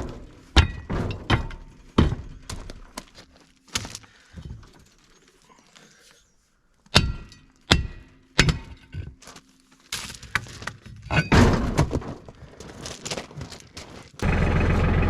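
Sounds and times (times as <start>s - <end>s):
ringing metal clanks: 11.1s - 11.5s.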